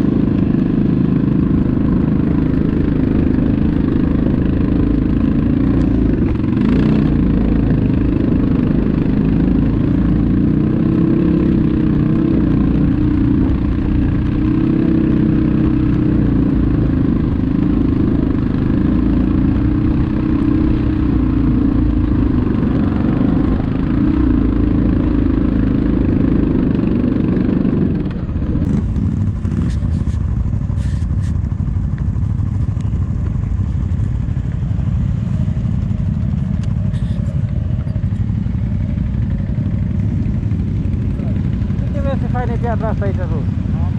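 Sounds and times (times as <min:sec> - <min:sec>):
atv engine running: 0:00.0 - 0:43.9.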